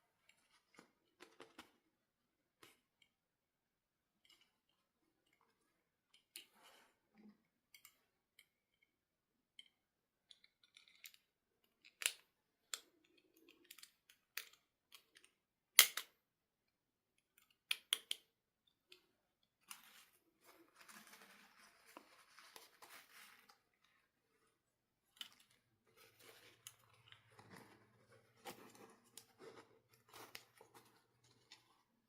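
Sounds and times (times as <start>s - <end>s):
small clicks and taps: 17.2s - 19.8s.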